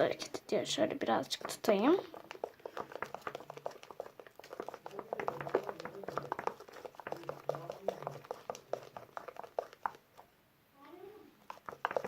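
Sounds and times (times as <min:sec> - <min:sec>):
slime being stirred: 0:00.0 - 0:12.0
sticky wet clicks and pops: 0:01.2 - 0:10.3, 0:11.4 - 0:12.0.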